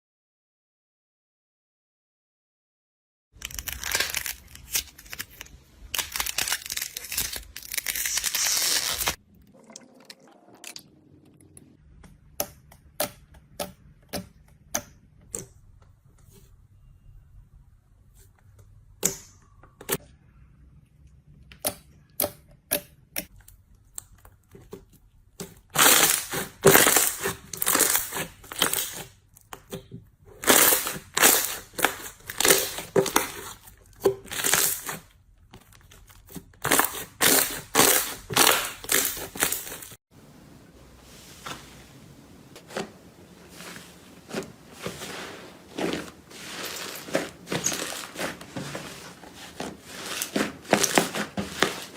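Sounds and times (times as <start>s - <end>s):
slime crackling and popping: 3.4s - 9.2s, 35.9s - 40.0s
slime squishing: 21.1s - 40.0s, 42.6s - 51.9s.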